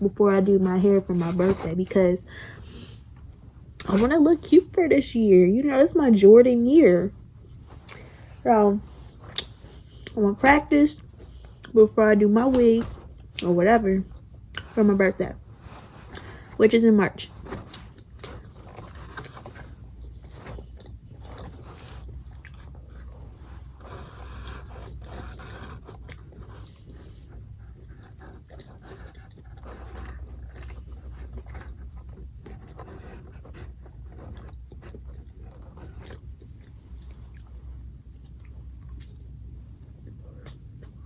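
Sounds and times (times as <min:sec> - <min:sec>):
chewing and crunching food: 0:17.3 - 0:41.0.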